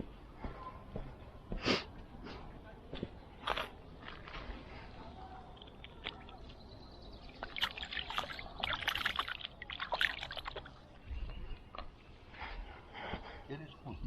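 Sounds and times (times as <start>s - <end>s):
water splashing and dribbling: 3.5s - 11.9s.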